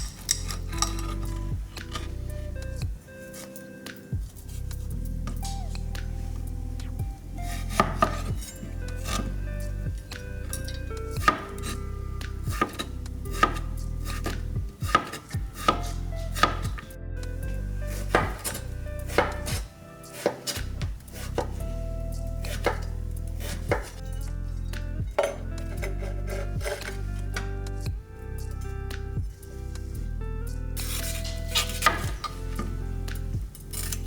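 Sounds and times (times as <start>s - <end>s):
knife chopping on cutting board: 7.5s - 9.3s, 11.2s - 11.7s, 12.4s - 16.8s, 17.9s - 19.6s, 20.2s - 20.6s, 22.4s - 24.0s, 25.2s - 27.0s, 30.8s - 32.8s.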